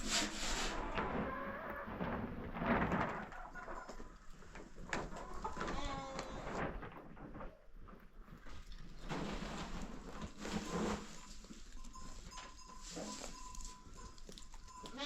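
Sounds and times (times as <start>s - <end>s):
sheep and goats bleating: 5.5s - 6.5s, 14.7s - 15.0s.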